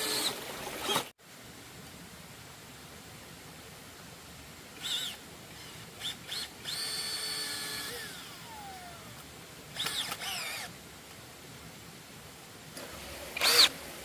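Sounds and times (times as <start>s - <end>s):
power tool motor whining: 4.8s - 9.1s, 9.8s - 10.7s, 13.3s - 13.8s.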